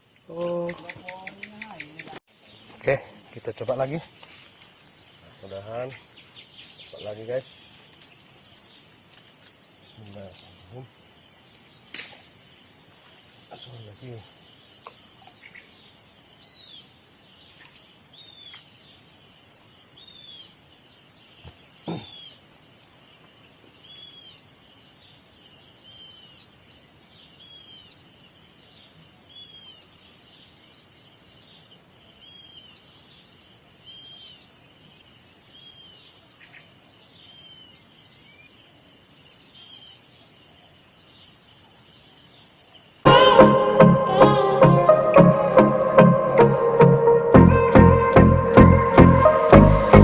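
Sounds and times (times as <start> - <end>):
bird calling: 0.3 - 3.0, 43.1 - 45.7, 47.3 - 48.6
high-pitched insect drone: 43.1 - 49.5.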